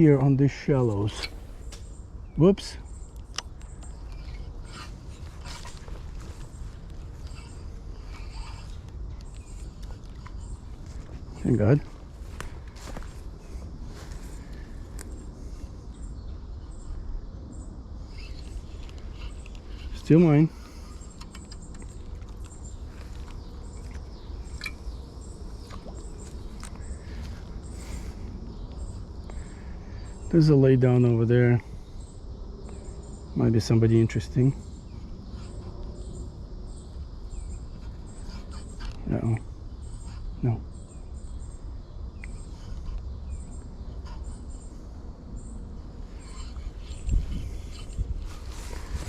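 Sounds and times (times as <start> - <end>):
low rumble: 0.0 - 19.9
steady low rumble: 0.0 - 30.6, 31.4 - 49.0
insects chirping: 0.0 - 49.0.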